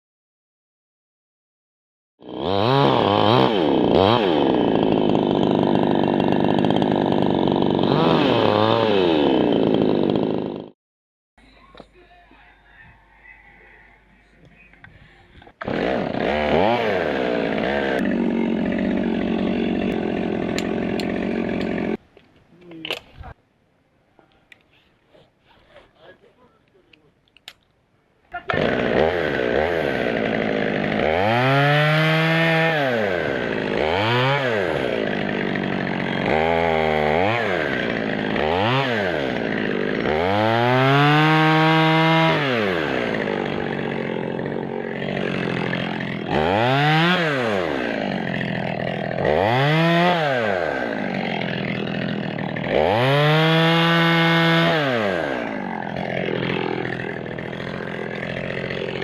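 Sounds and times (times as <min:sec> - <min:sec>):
chainsaw engine revving: 0:02.2 - 0:10.8, 0:15.5 - 0:22.0, 0:28.4 - 0:59.0.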